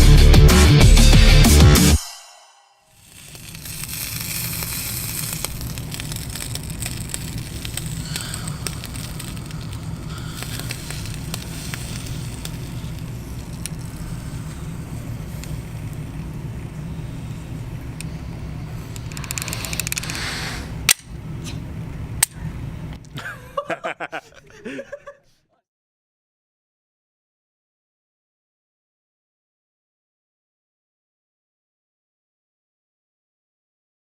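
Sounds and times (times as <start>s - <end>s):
even hiss: 2.8s - 21.8s
faint crackles and clicks: 3.0s - 18.1s, 18.8s - 21.6s
rumbling background noise: 3.0s - 23.2s.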